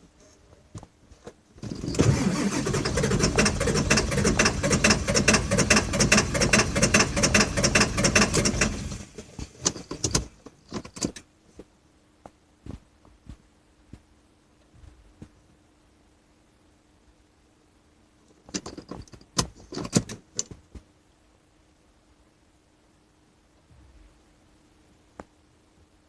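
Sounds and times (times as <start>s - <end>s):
engine starter cranking: 1.6s - 11.1s.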